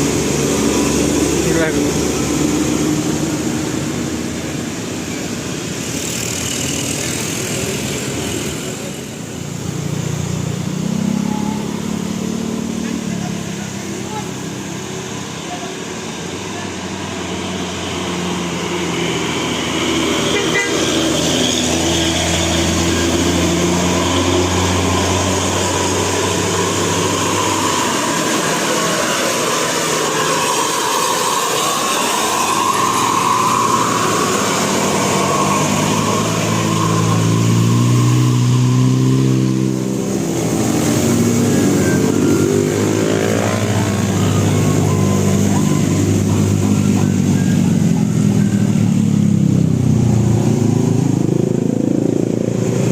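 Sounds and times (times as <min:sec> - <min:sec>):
traffic noise: 0:00.0 - 0:52.9
bus musical horns: 0:20.2 - 0:21.5.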